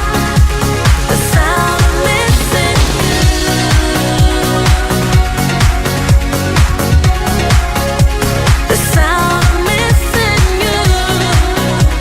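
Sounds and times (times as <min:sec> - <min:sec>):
kick drum beat: 0:01.4 - 0:09.2
synth melody: 0:06.2 - 0:08.9.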